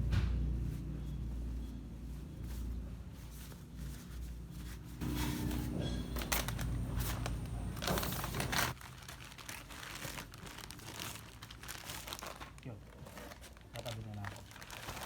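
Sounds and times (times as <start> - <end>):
low steady hum: 0.0 - 8.8
packaging crinkling: 5.0 - 15.0.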